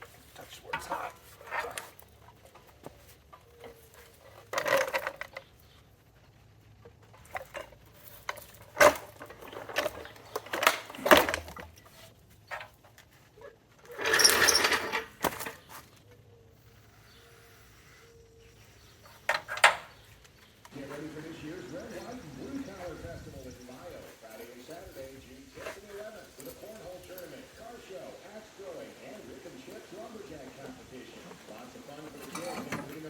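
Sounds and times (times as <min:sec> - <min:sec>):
metal parts scraping and rattling: 0:00.0 - 0:05.8, 0:06.9 - 0:15.9, 0:22.0 - 0:27.7, 0:31.2 - 0:33.0
metal tools clanking and clicking: 0:13.9 - 0:15.6, 0:19.1 - 0:20.0, 0:32.0 - 0:33.0.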